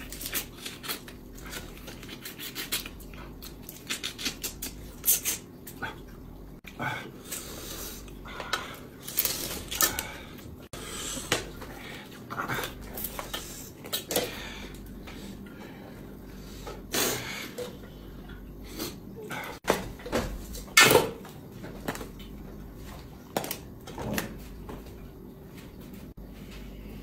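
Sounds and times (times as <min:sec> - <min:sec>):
chewing and smacking: 0:00.0 - 0:07.4.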